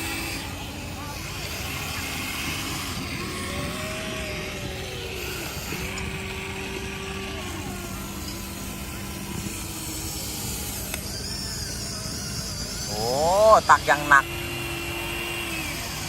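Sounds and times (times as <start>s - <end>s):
electric motors whining: 0.0s - 16.0s.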